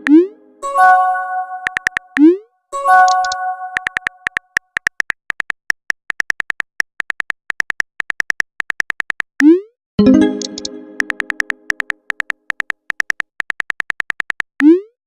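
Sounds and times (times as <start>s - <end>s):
chime: 0.6s - 1.7s, 2.8s - 4.0s
rapid electronic clicks: 1.6s - 2.2s, 3.1s - 9.5s, 10.1s - 14.8s.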